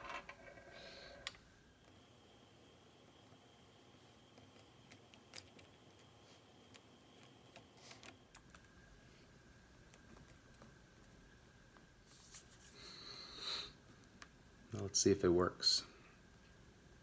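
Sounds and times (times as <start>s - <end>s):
faint clicks and taps: 9.8s - 11.9s.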